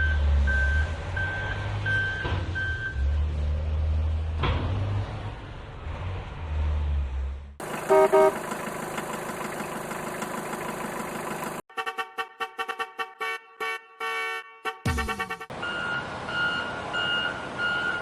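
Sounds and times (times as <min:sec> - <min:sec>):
truck engine rumble: 0:00.0 - 0:11.7
horn toots: 0:07.8 - 0:08.4, 0:11.7 - 0:15.5.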